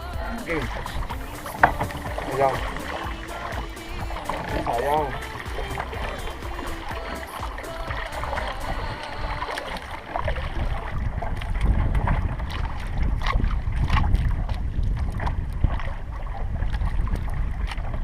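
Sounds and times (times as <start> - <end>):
water splashes: 0.0 - 18.0
wind buffeting microphone: 0.0 - 18.0.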